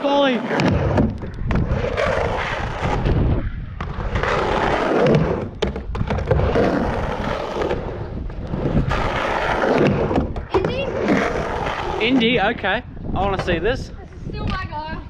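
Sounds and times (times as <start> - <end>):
skateboard wheels rolling on ramp: 0.0 - 13.7
skateboard clacking: 8.9 - 12.2.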